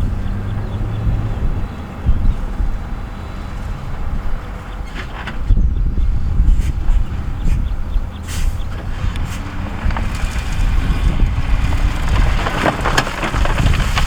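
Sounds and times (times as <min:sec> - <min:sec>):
heavy diesel engine rumbling: 0:00.0 - 0:14.0
rock and gravel clattering: 0:06.6 - 0:14.0.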